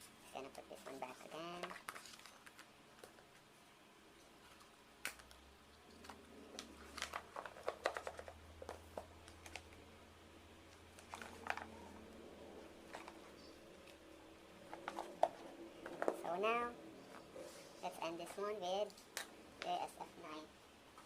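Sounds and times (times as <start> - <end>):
faint low hum: 0.0 - 21.0
paper and plastic rustling: 0.3 - 3.5, 5.9 - 9.8, 10.9 - 11.9, 12.8 - 14.0, 14.6 - 16.2.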